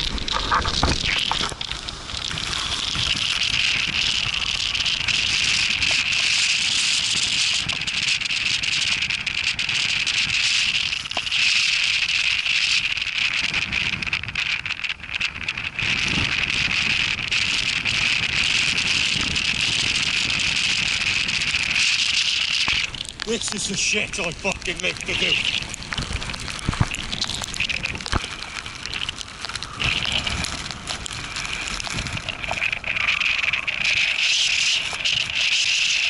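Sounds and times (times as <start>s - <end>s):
heavy wind and rain hissing: 0.0s - 36.0s
wind buffeting microphone: 0.0s - 36.0s.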